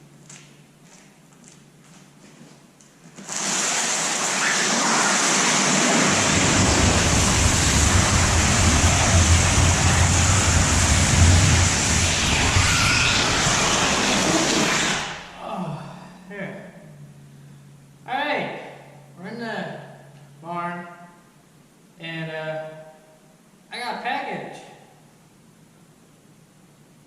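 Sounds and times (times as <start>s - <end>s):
loud steady rushing noise: 3.4s - 15.4s
low hum: 4.5s - 23.7s.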